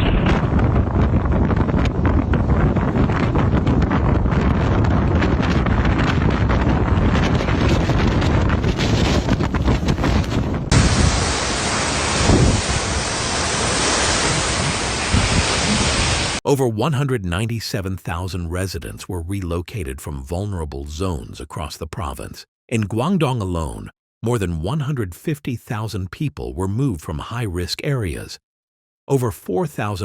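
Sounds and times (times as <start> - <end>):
strong wind buffeting microphone: 0.0 - 16.4
dense storm hiss: 10.7 - 16.4.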